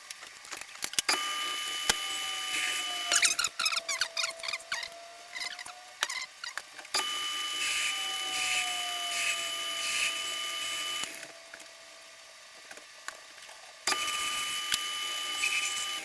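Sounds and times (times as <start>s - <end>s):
electric motor whining: 1.1s - 12.2s, 13.9s - 16.0s.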